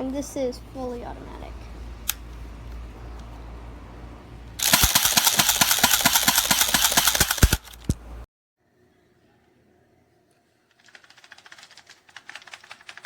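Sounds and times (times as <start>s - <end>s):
airsoft pistol full-auto burst: 4.6s - 8.0s.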